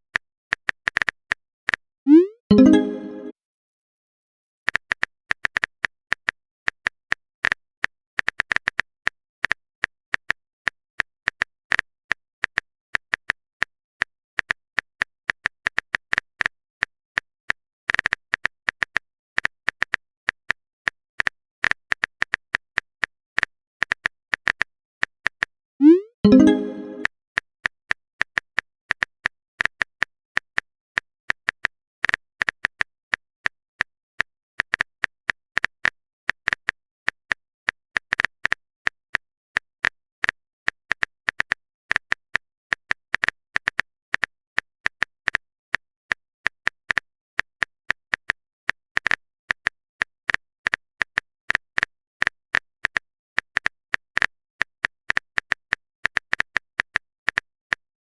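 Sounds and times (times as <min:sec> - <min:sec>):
keyboard typing clicks: 0:02.1 - 0:03.3, 0:25.8 - 0:27.1.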